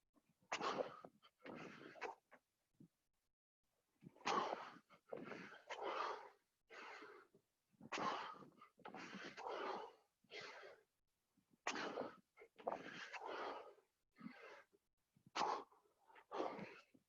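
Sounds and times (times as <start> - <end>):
person breathing hard: 4.3 - 7.3, 8.0 - 10.9, 11.7 - 14.8, 15.4 - 17.0.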